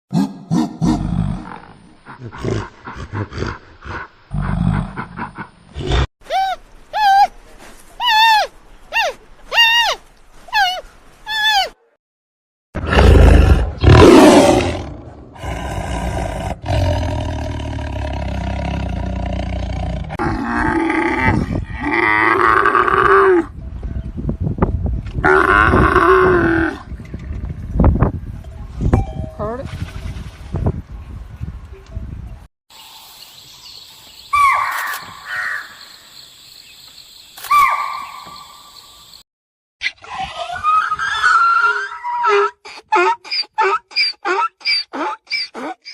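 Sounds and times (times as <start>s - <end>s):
outdoor background hiss: 1.1s - 11.8s, 32.8s - 37.4s
big cat roaring: 12.8s - 23.4s.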